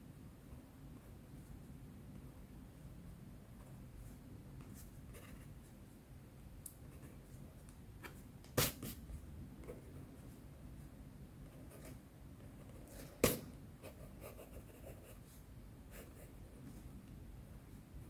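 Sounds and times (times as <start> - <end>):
pencil scratching on paper: 3.6 - 6.0, 13.8 - 17.0.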